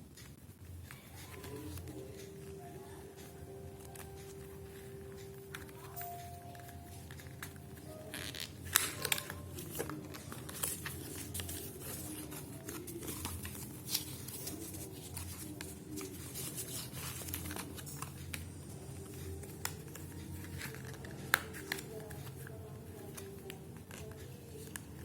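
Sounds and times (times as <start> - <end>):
packaging crinkling: 7.1 - 18.4.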